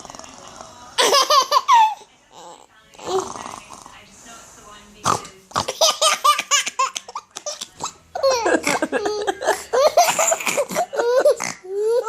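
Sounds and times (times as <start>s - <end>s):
little girl laughing: 8.2s - 12.0s.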